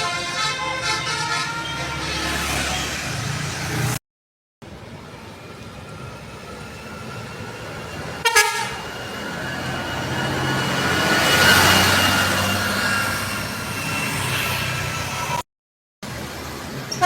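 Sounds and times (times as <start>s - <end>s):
bus horn blast: 0.0s - 3.0s, 8.2s - 8.9s
large vehicle approaching: 4.6s - 15.4s.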